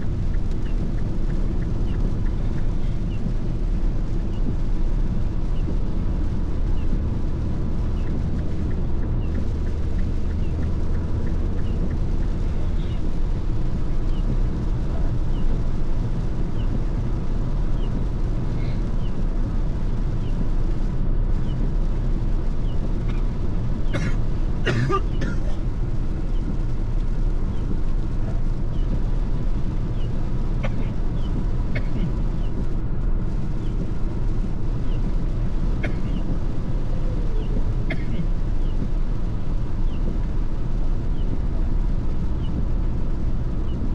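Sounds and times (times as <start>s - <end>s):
faint light ticks: 0.0s - 23.8s, 25.9s - 32.7s
engine and road rumble: 0.0s - 43.9s.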